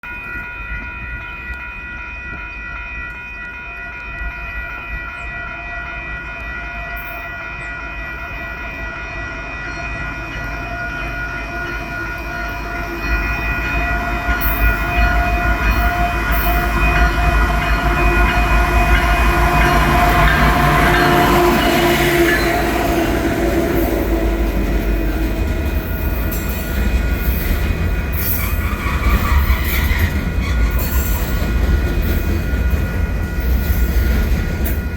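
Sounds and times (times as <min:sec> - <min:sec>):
rail wheel noise: 0:00.0 - 0:34.9
diesel locomotive rumble: 0:08.4 - 0:34.9
wheel clicks and squeal: 0:27.2 - 0:34.8.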